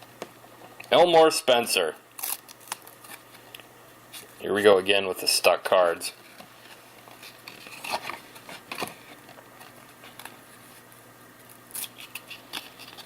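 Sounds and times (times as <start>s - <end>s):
cards scraping and clicking: 6.3s - 10.9s, 11.5s - 13.0s.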